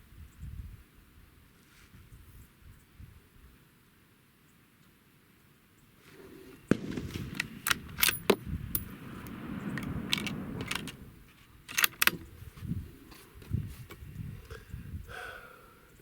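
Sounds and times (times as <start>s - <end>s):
low rustling handling noise: 6.0s - 14.5s
sharp metallic clicks and clinks: 6.7s - 11.0s, 11.7s - 12.3s.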